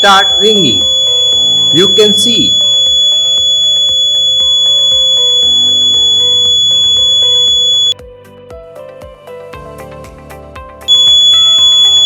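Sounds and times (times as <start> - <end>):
smoke detector buzzer: 0.0 - 8.0, 10.9 - 12.0
soft background music: 8.0 - 11.0.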